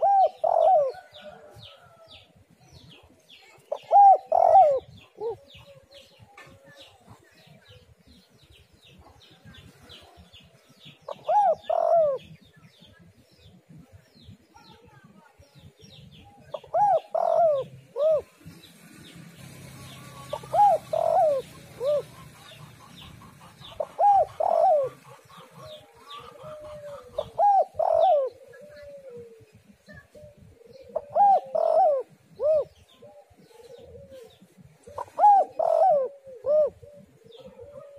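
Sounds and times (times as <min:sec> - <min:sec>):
dove cooing: 0:00.0 - 0:02.0, 0:03.5 - 0:07.8, 0:11.0 - 0:12.4, 0:16.2 - 0:37.9
small birds chirping: 0:00.0 - 0:37.9.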